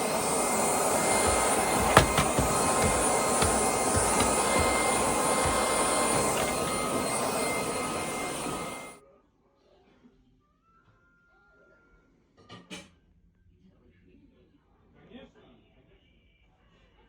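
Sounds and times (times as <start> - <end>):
vacuum cleaner motor whine: 0.0 - 9.0.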